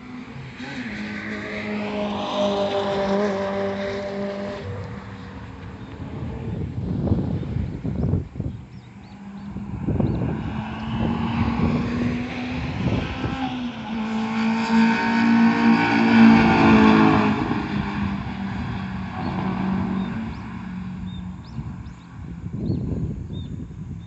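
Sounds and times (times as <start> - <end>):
car engine at high revs: 0.0 - 23.5
wind thumps on microphone: 5.6 - 13.5, 21.4 - 24.0.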